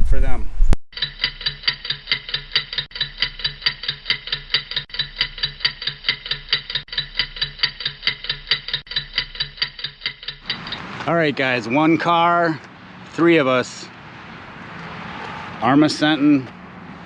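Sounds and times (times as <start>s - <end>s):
ticking loop: 1.0s - 10.8s.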